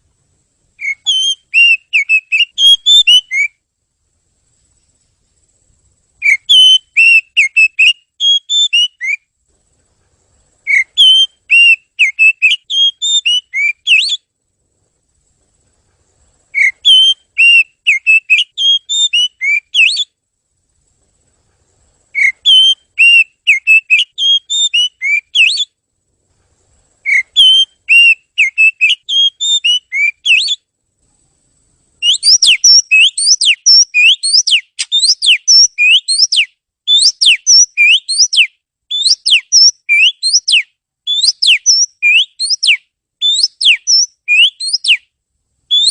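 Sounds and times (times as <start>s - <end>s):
bird singing whistled notes: 0.7s - 3.6s, 6.1s - 9.3s, 10.6s - 14.3s, 16.5s - 20.2s, 22.1s - 25.8s, 27.0s - 30.7s, 32.0s - 45.1s.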